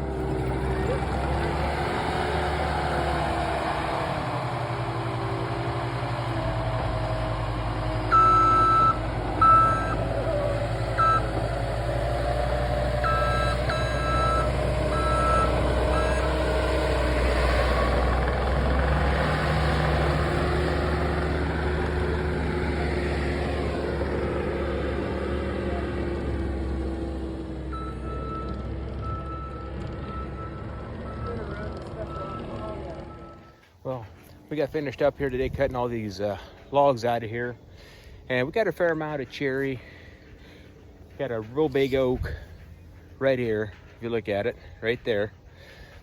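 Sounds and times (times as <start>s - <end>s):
diesel engine working: 0.0s - 46.0s
backup alarm beeping: 8.0s - 10.2s, 10.8s - 11.5s, 12.9s - 16.6s, 27.8s - 33.6s.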